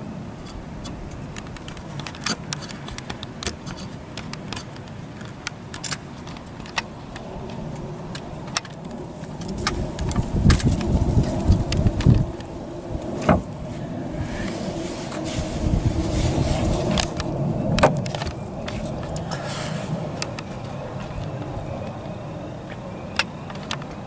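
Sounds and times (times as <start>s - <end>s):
wind buffeting microphone: 0.0s - 24.0s.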